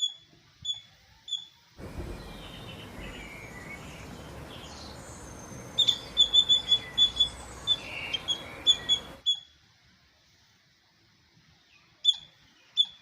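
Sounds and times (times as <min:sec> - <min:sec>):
squirrel chirping: 0:00.0 - 0:09.5
steady hiss: 0:00.2 - 0:12.8.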